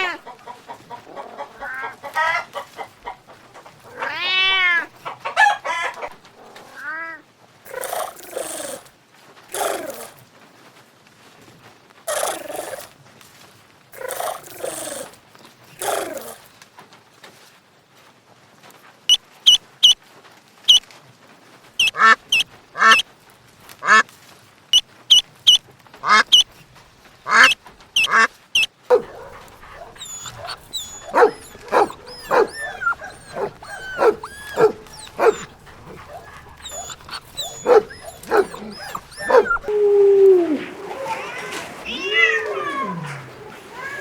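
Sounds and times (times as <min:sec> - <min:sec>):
animal calling in sharp calls: 0:07.7 - 0:08.9, 0:09.5 - 0:10.2, 0:12.1 - 0:12.9, 0:14.0 - 0:16.5, 0:21.8 - 0:23.0, 0:27.3 - 0:44.0.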